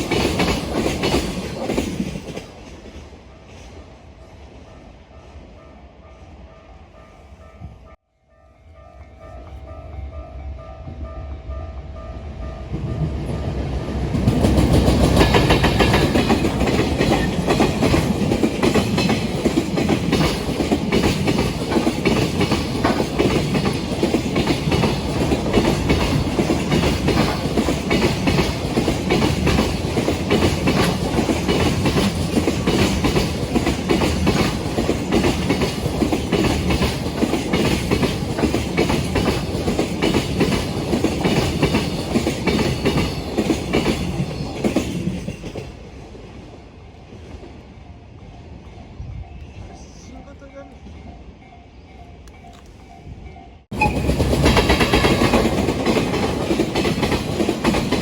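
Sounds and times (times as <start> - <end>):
train wheels clattering over rails: 0.0 - 3.7, 12.6 - 46.2, 53.6 - 58.0.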